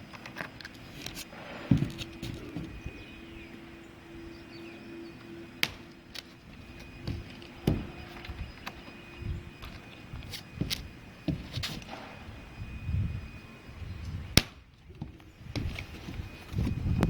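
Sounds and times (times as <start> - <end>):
faint steady hum: 0.0 - 17.0
heavy thumps on roof deck: 1.6 - 3.1, 5.6 - 9.6, 10.5 - 12.4, 14.3 - 16.7
sharp crack: 5.6 - 6.3, 14.4 - 14.7.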